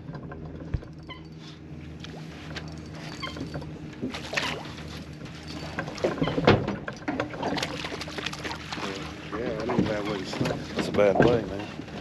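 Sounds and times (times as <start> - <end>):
low steady hum: 0.0 - 12.0
knocks and scuffs on boat: 1.8 - 12.0.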